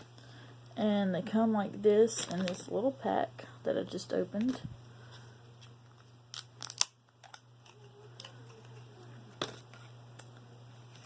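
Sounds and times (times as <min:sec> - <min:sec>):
packaging crinkles and clicks: 0:05.9 - 0:08.8.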